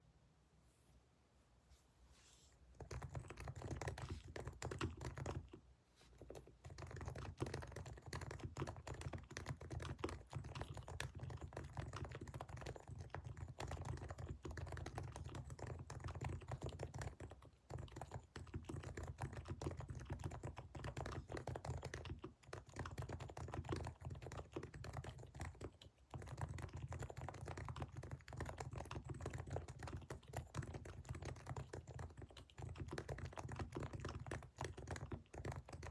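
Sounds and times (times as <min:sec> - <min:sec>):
fast typing on keyboard: 0:02.8 - 0:05.6, 0:06.2 - 0:35.9.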